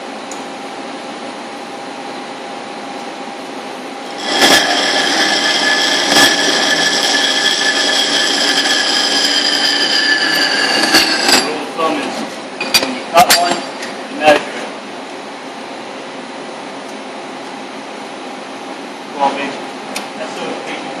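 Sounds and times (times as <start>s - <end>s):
high ringing cutting whine: 3.6s - 14.5s
band saw humming: 4.0s - 11.8s.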